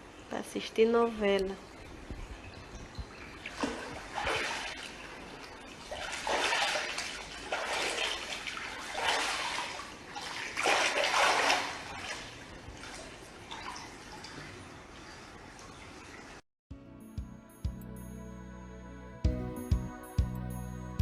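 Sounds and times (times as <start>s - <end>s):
floodwater splashing and sloshing: 1.6s - 16.4s.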